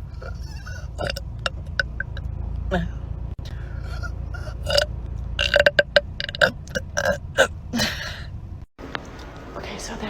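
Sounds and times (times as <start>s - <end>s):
woman burping: 3.8s - 8.2s.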